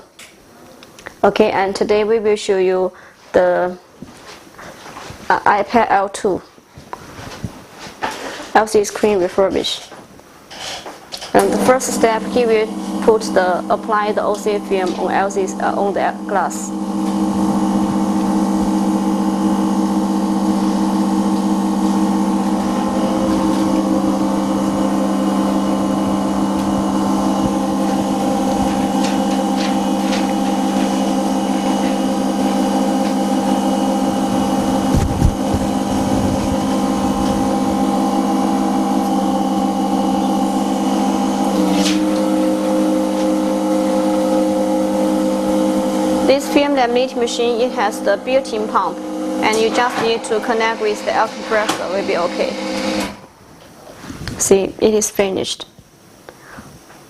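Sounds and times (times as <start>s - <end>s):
machine humming: 10.5s - 54.6s.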